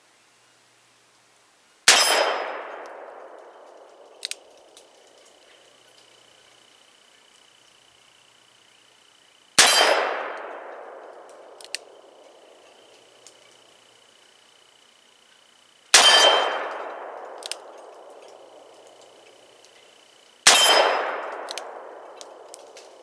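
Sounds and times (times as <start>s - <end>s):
steel targets ringing: 1.9s - 2.8s, 9.6s - 10.3s, 15.9s - 17.3s, 20.5s - 21.4s.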